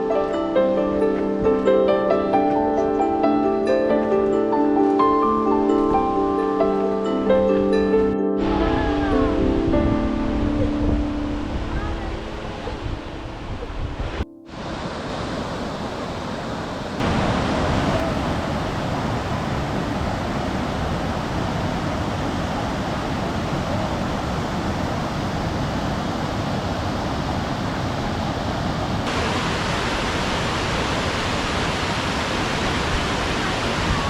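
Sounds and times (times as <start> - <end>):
waterfall rushing: 8.4 - 34.0.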